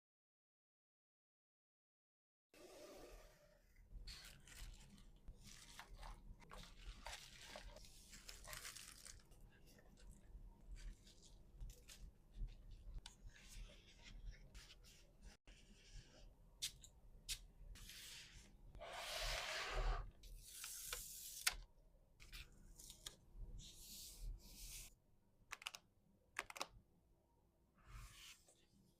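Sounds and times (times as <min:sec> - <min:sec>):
rustling or tearing: 0:04.1 - 0:09.3
packaging being handled: 0:04.1 - 0:10.1.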